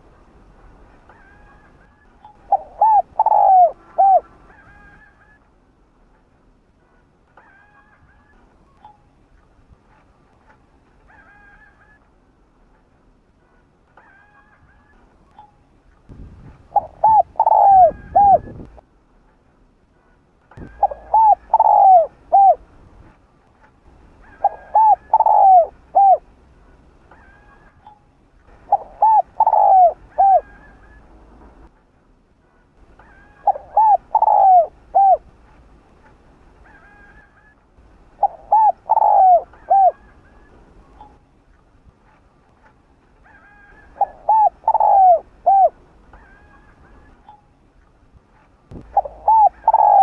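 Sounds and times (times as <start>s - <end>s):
dove cooing: 2.5s - 5.4s, 16.6s - 18.7s, 20.6s - 22.6s, 24.2s - 26.3s, 28.6s - 31.1s, 33.0s - 35.3s, 38.2s - 41.2s, 43.2s - 47.4s, 48.7s - 50.0s.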